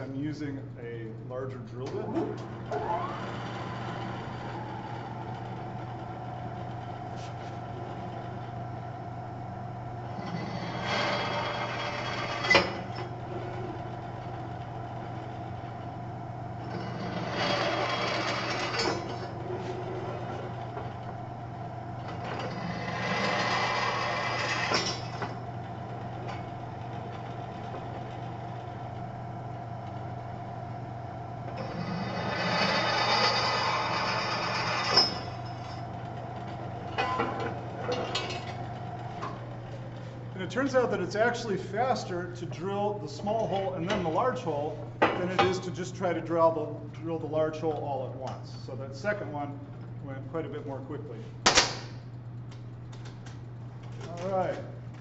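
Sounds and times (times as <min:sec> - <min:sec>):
drill press motor running: 0:02.0 - 0:45.0
drill bit cutting metal: 0:31.6 - 0:35.8.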